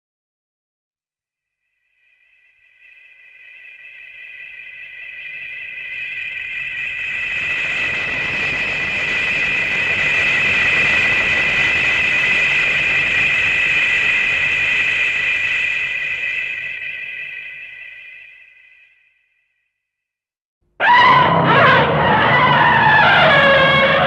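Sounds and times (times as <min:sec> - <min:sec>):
jet-like whine over rushing roar: 0:05.5 - 0:18.1.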